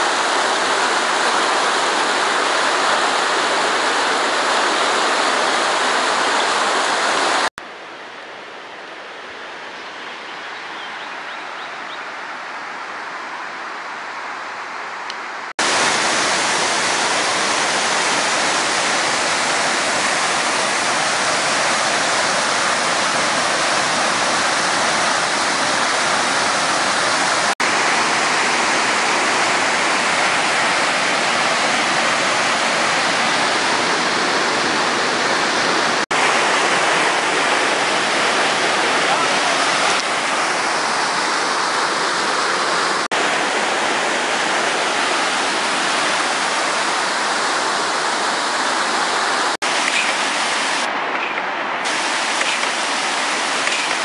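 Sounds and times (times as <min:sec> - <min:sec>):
waterfall roaring: 0:00.0 - 0:54.0.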